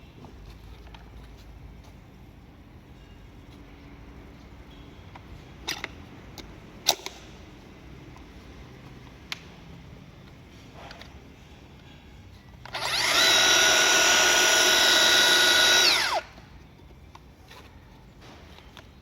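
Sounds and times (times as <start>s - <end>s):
rotary hammer whining: 12.7s - 16.4s.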